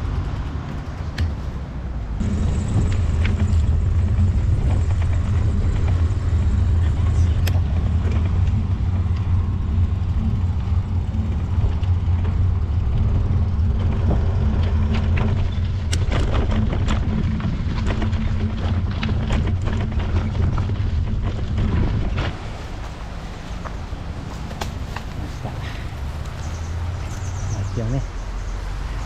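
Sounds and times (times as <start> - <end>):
rumble of bicycle tyres: 0.0 - 29.0
clicks and rattles: 2.6 - 22.4.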